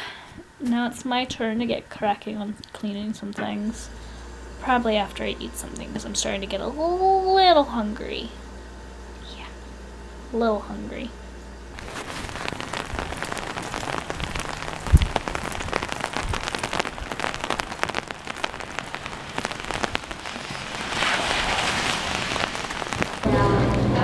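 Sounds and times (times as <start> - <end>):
steady rain falling: 11.7 - 24.0.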